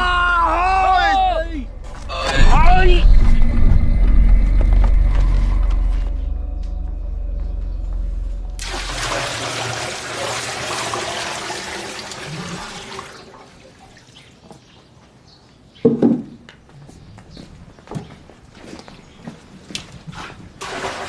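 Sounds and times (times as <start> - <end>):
loud rushing noise: 1.2 - 10.0.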